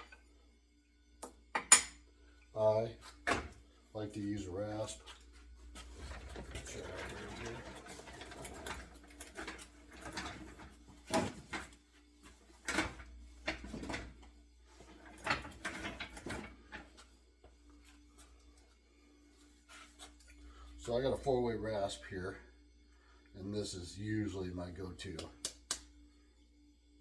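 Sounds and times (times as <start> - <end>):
tools rubbing and shuffling: 4.8 - 21.1.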